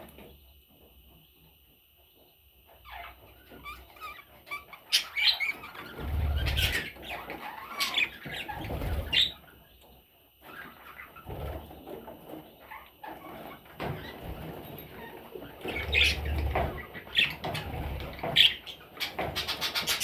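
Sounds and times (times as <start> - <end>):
budgerigar chicks chirping: 2.8 - 11.2, 15.5 - 20.0.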